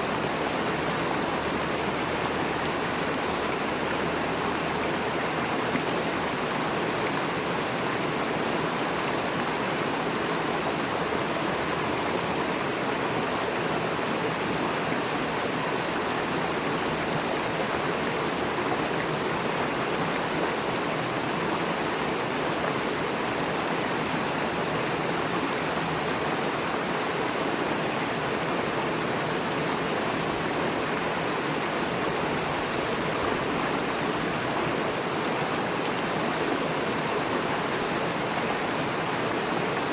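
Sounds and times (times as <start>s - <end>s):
river rushing over rocks: 0.0s - 39.9s.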